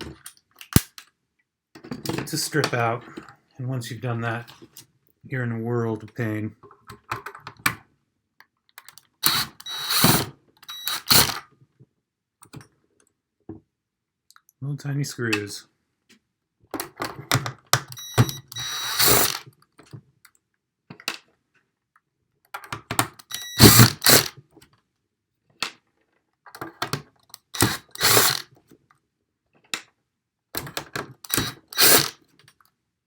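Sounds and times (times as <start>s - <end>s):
screwdriver clicking and scraping: 8.8s - 11.4s, 18.0s - 19.4s, 23.2s - 24.3s, 27.4s - 28.4s, 31.3s - 32.2s.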